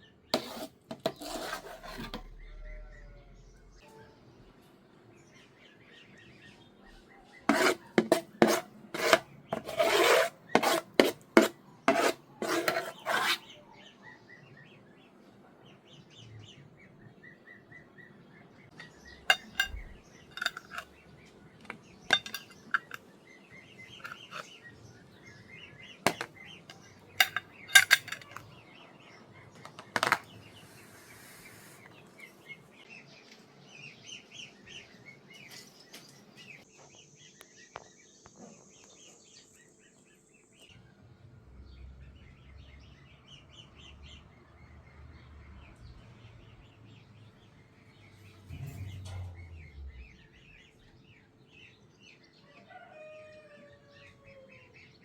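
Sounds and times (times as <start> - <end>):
utensil scraping cooking vessel: 0.4 - 2.8, 7.5 - 13.5, 18.8 - 21.0, 21.6 - 23.0, 23.9 - 24.6, 26.1 - 28.4, 48.2 - 50.2
faint bird chirps: 2.2 - 7.5
clinks: 18.8 - 20.9, 21.6 - 23.0, 26.1 - 28.5.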